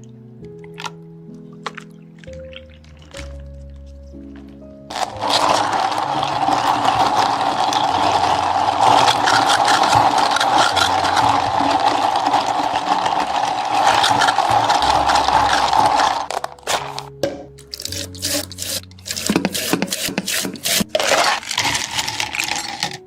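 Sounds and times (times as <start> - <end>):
appliance motor running with rattle: 4.9 - 16.3.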